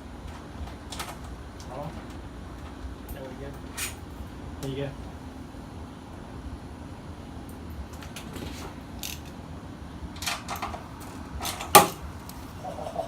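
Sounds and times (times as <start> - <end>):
hand tools clicking and clanking: 10.2 - 13.0.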